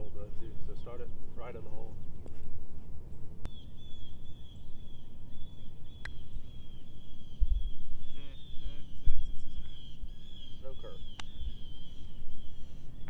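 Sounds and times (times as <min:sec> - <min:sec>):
wind rumbling on microphone: 0:00.0 - 0:13.0
high chirping trill: 0:03.5 - 0:13.0
sharp clicks: 0:11.1 - 0:11.4.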